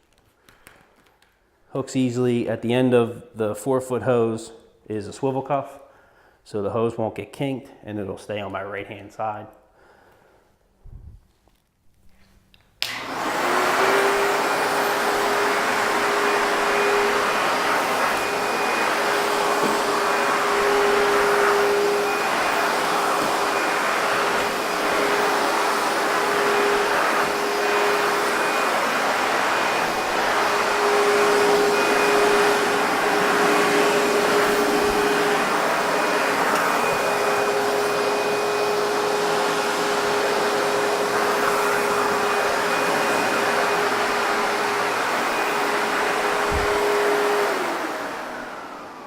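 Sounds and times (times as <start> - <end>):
backpack vacuum running: 12.8 - 49.0
vacuum motor winding down: 12.8 - 49.0.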